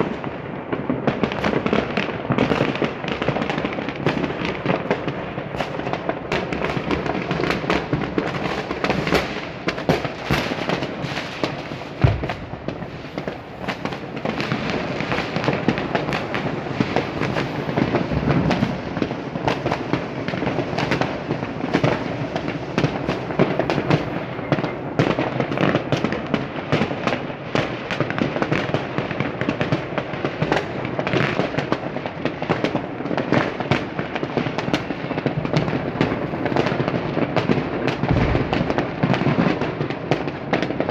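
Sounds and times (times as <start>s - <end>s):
fireworks and firecrackers crackling: 0.0s - 40.9s
heavy low firework boom: 12.0s - 21.0s, 34.6s - 36.8s, 38.1s - 38.6s.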